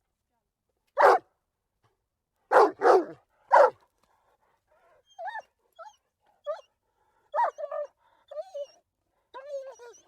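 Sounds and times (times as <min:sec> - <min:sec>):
dog barking: 0:01.0 - 0:01.2, 0:02.5 - 0:03.8.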